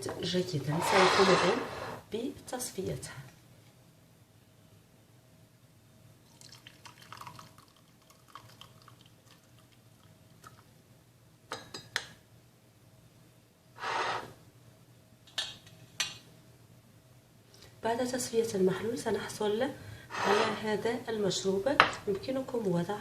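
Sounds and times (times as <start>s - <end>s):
liquid pouring: 6.3s - 9.8s
liquid dripping and trickling: 6.3s - 10.7s.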